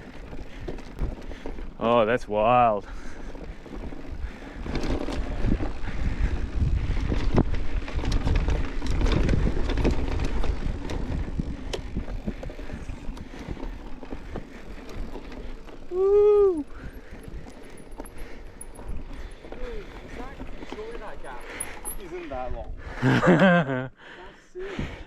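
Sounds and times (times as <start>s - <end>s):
tyres rumbling over dirt and rocks: 0.0s - 22.0s
bike clicks and rattles: 0.0s - 23.9s
wind on microphone: 3.8s - 13.7s.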